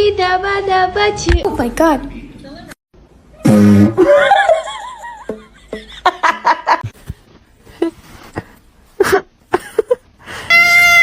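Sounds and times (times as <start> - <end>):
person laughing: 9.0 - 10.0.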